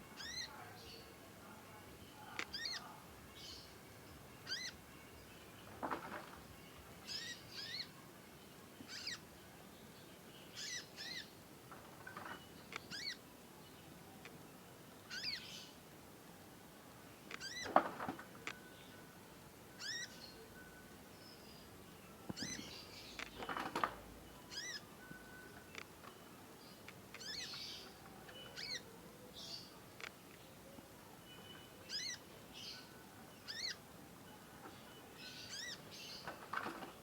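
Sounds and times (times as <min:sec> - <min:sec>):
young songbird chirping: 0:00.2 - 0:01.0, 0:02.2 - 0:03.8, 0:04.4 - 0:04.8, 0:07.0 - 0:08.0, 0:08.9 - 0:09.3, 0:10.0 - 0:11.4, 0:12.6 - 0:13.3, 0:15.0 - 0:15.8, 0:19.8 - 0:23.4, 0:24.4 - 0:29.8, 0:31.2 - 0:33.8, 0:34.8 - 0:36.6.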